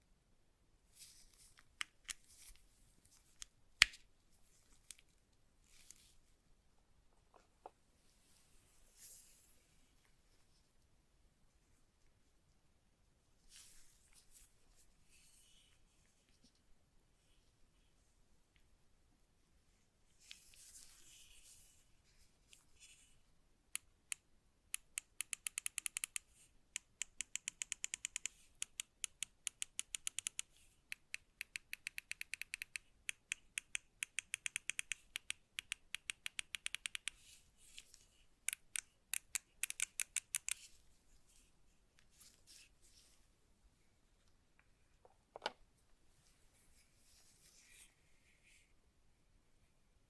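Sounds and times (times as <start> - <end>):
mouse buttons clicking: 24.8 - 37.2, 38.5 - 40.7.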